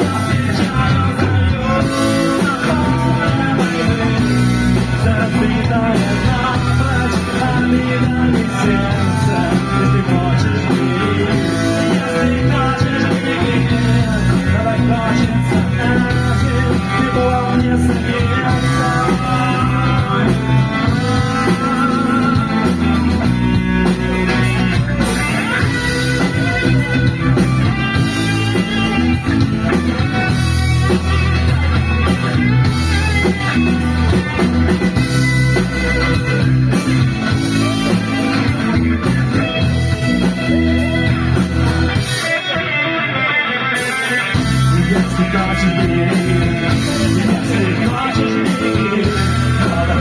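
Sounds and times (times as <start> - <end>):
electric guitar: 0.0 - 50.0
rock band playing: 0.0 - 50.0.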